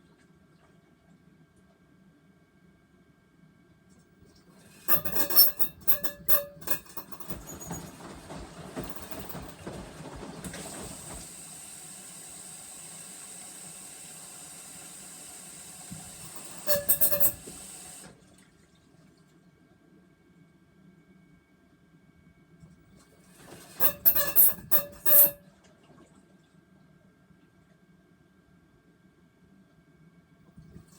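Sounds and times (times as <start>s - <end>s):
washing machine steady hiss: 4.4s - 18.4s, 22.4s - 25.4s
washing machine rattling knocks: 5.9s - 11.3s.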